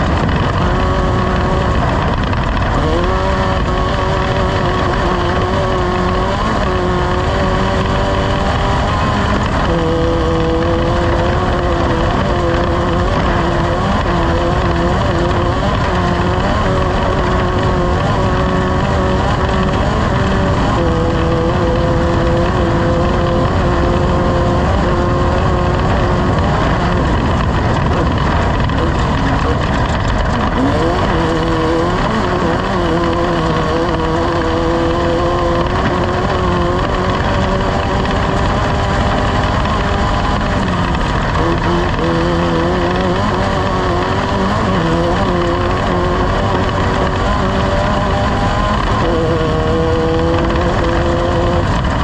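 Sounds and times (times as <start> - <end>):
race vehicle engine revving: 0.0 - 52.0
steady rushing noise: 0.0 - 52.0.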